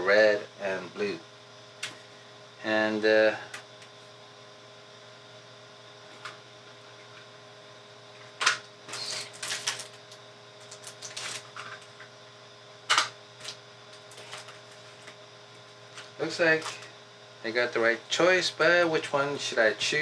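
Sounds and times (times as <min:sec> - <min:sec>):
faint steady hum: 0:00.0 - 0:20.0
plastic cartridges rattling: 0:08.9 - 0:11.8, 0:12.9 - 0:15.1.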